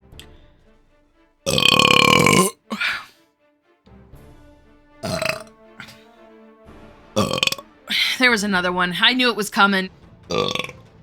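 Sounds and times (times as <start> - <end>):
soft background music: 0.0 - 11.0
loud drawn-out burp: 1.5 - 3.1, 5.0 - 6.0, 7.2 - 7.6, 10.3 - 10.8.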